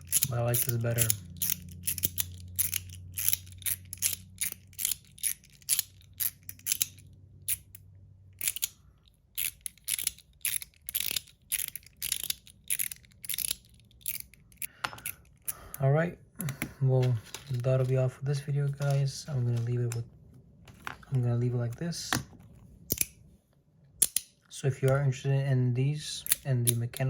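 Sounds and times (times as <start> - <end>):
metal fidget slider clicking: 0.0 - 7.8, 8.4 - 15.5, 24.0 - 24.3.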